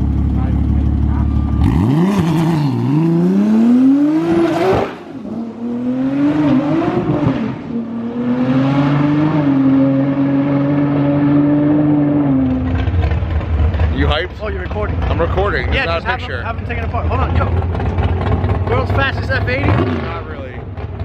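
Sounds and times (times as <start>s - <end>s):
car engine revving hard: 1.5s - 13.2s, 17.6s - 20.5s.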